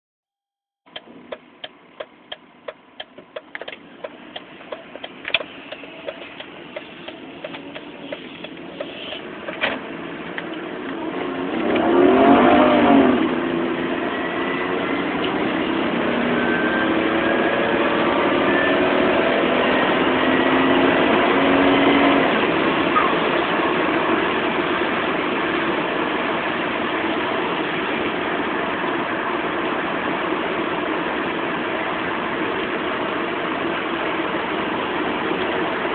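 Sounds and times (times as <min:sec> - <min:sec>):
sharp clicks: 0:00.9 - 0:09.7
car engine accelerating: 0:00.9 - 0:35.9
engine whine climbing in pitch: 0:00.9 - 0:35.9.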